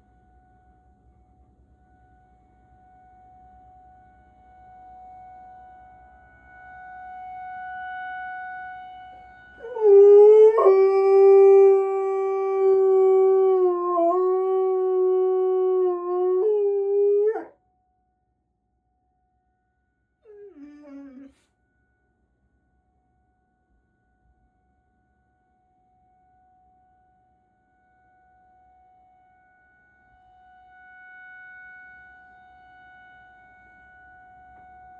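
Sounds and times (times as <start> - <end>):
faint emergency siren: 2.3 - 17.6, 20.3 - 21.4
dog howling: 9.6 - 17.6, 20.3 - 21.4.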